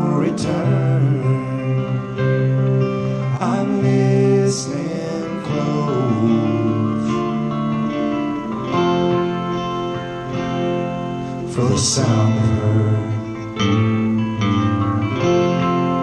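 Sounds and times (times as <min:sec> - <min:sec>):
person singing: 0:00.0 - 0:09.5, 0:11.3 - 0:14.4
acoustic guitar playing: 0:00.0 - 0:16.0.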